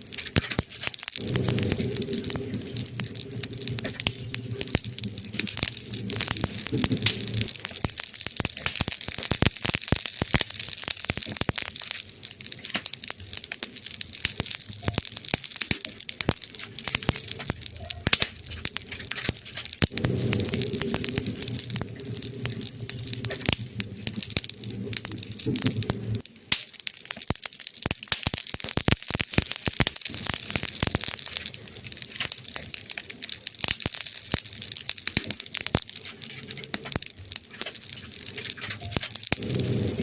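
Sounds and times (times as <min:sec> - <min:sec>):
low rumble of flame: 0:00.0 - 0:40.0
wood fire crackling and popping: 0:00.0 - 0:40.0
steady hiss: 0:34.2 - 0:40.0.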